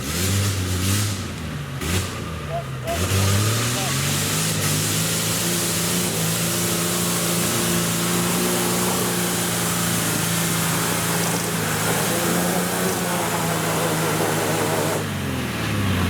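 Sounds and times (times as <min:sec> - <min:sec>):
engine running steadily: 0:00.0 - 0:16.0.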